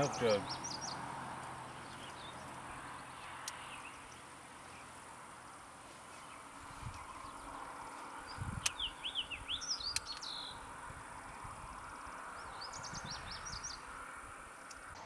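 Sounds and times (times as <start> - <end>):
faint insect hum: 0.0 - 15.0
songbird chirping: 0.0 - 15.0
sharp clicks: 3.4 - 3.6, 9.9 - 10.3.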